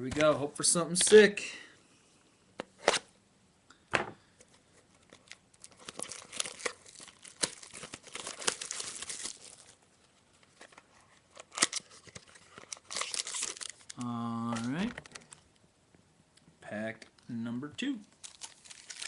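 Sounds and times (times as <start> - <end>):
wrapper tearing and crinkling: 5.1 - 9.8, 11.3 - 15.4, 18.2 - 19.0.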